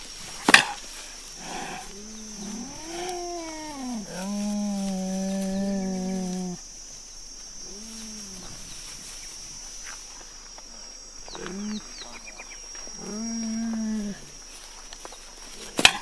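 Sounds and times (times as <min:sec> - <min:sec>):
cheetah calls: 0:01.4 - 0:06.6.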